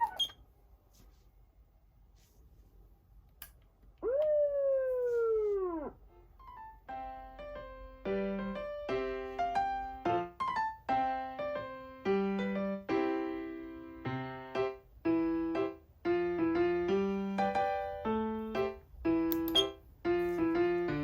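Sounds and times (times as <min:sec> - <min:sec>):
piano music: 0:06.0 - 0:21.0.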